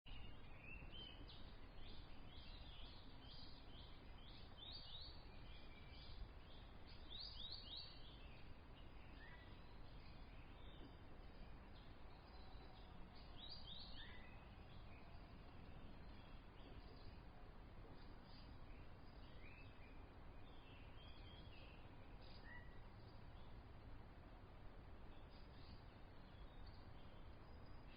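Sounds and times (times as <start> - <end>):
low steady background noise: 0.1 - 27.9.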